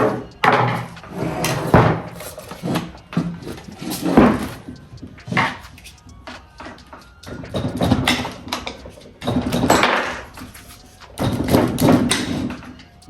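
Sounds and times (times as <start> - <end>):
metal parts knocking and scraping: 6.8 - 12.7.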